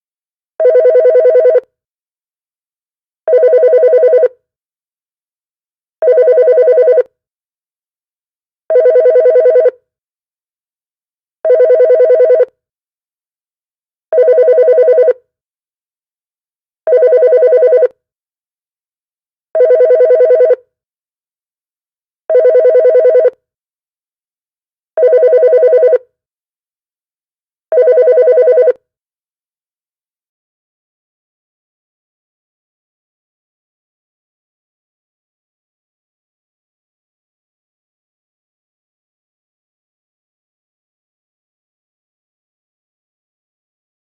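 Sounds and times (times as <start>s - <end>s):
telephone ringing: 0.6s - 1.6s, 3.3s - 4.3s, 6.0s - 7.1s, 8.7s - 9.8s, 11.5s - 12.5s, 14.2s - 15.2s, 16.9s - 17.9s, 19.6s - 20.6s, 22.3s - 23.4s, 25.0s - 26.0s, 27.7s - 28.8s.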